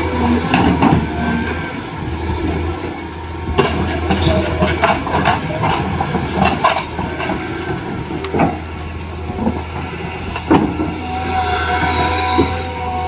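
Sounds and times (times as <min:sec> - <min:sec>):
small electric motors whirring: 0:00.0 - 0:12.2
plastic knocks and clicks: 0:00.2 - 0:12.1.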